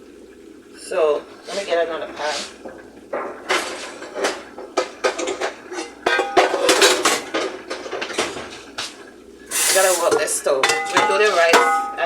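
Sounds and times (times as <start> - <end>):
pots and pans clattering: 2.4 - 12.0.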